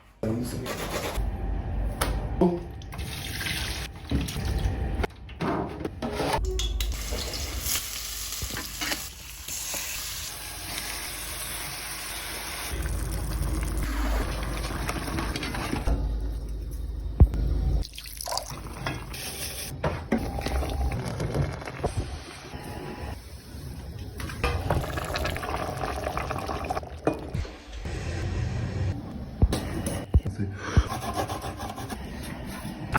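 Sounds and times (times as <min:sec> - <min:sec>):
handling and stirring noises: 0:12.8 - 0:17.2.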